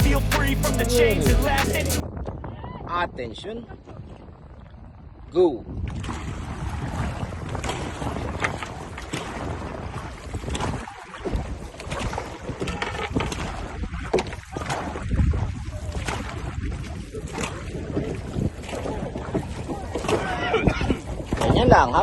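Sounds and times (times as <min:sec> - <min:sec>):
wind buffeting microphone: 0:03.6 - 0:22.0
paddles splashing in water: 0:05.8 - 0:22.0.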